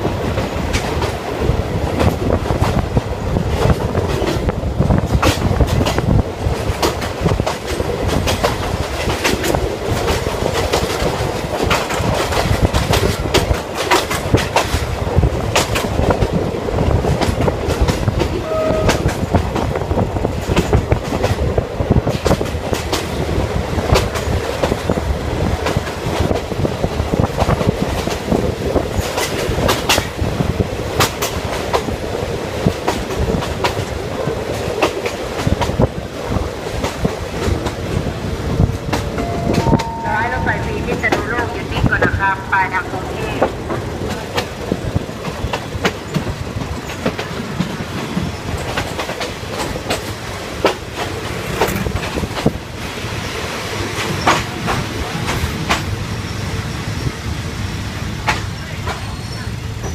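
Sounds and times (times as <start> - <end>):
wheels clicking over rail joints: 0.0 - 39.7, 43.1 - 56.6, 58.2 - 59.9
train wheels rumbling: 0.0 - 59.9.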